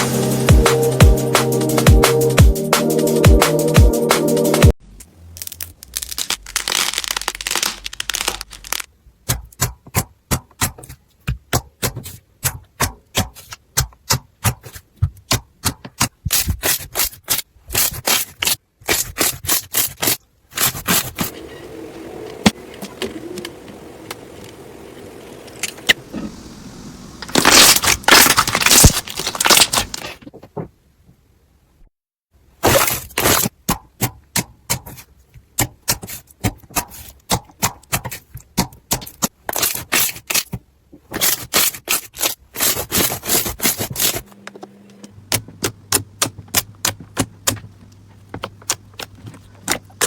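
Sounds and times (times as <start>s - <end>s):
dense crackling: 5.0s - 8.9s, 22.4s - 30.2s
slime hissing and rustling: 5.4s - 8.9s, 25.8s - 30.0s.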